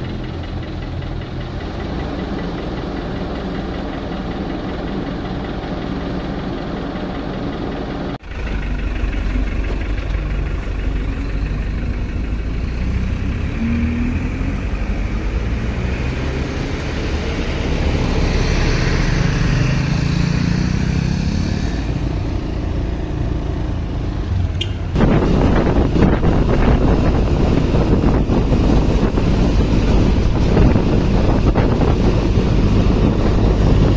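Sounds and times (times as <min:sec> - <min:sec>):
heavy diesel engine running: 0:00.0 - 0:33.9
rush of wind-like noise: 0:24.9 - 0:33.9.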